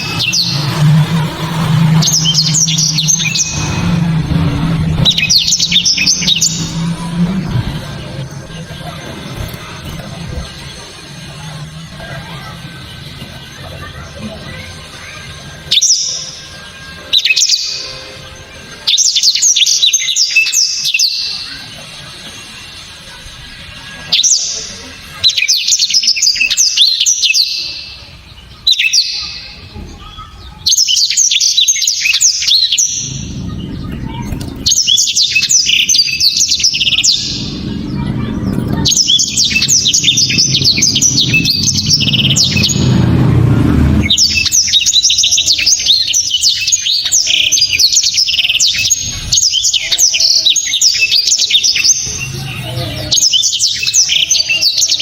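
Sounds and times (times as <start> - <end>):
low background rumble: 0.0 - 15.6, 32.6 - 46.6
canary singing chirps and trills: 0.0 - 55.0.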